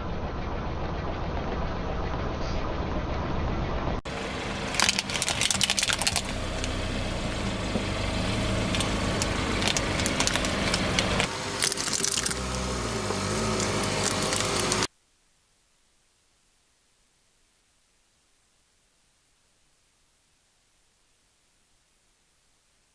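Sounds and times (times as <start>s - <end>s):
car engine running: 0.0s - 14.9s
tyre crunching brittle objects: 4.6s - 14.9s.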